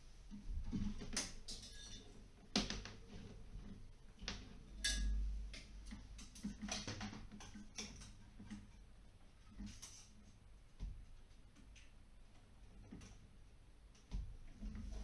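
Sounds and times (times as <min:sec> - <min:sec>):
hand tools and wires clicking: 0:00.8 - 0:14.2.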